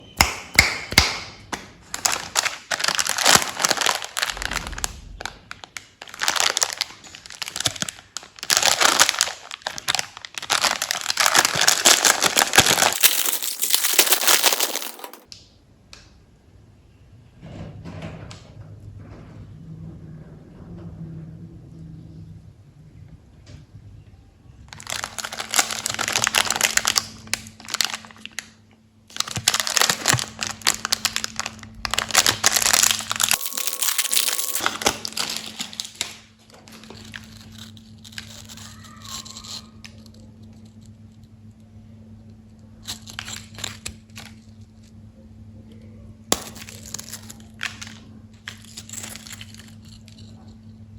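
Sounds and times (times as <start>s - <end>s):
wrappers tearing and crinkling: 1.9s - 15.3s, 24.7s - 28.5s, 29.1s - 40.1s.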